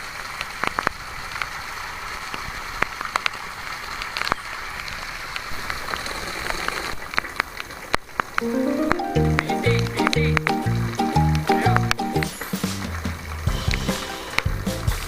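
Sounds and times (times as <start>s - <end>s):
rain falling steadily: 0.0s - 15.0s.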